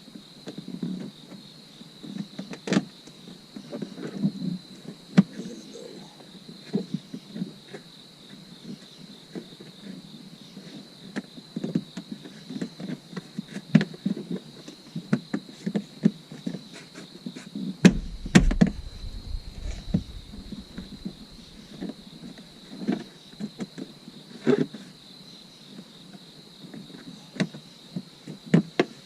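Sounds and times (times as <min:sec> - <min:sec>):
faint high tone: 0:05.4 - 0:06.2
loud knocks: 0:17.9 - 0:21.8.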